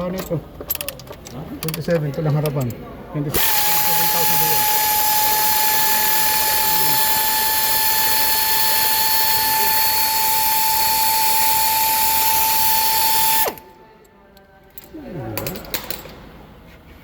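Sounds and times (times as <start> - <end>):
power tool whining: 3.3 - 13.6.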